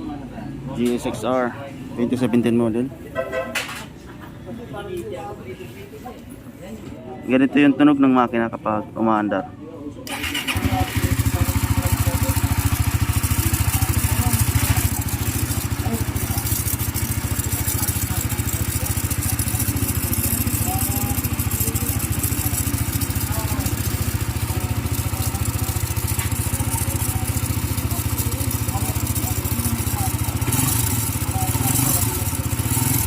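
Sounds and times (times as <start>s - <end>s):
motorcycle engine idling: 10.1s - 33.0s
gritty grinding bearing: 11.8s - 33.0s.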